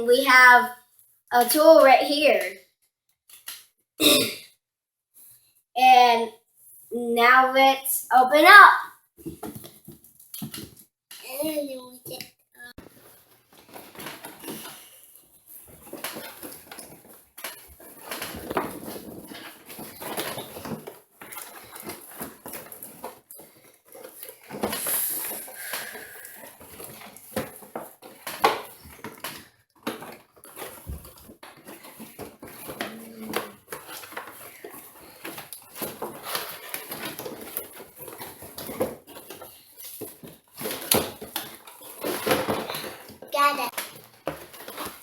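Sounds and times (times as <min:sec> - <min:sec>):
plastic and cardboard crinkling: 0:09.2 - 0:10.8, 0:12.8 - 0:45.0.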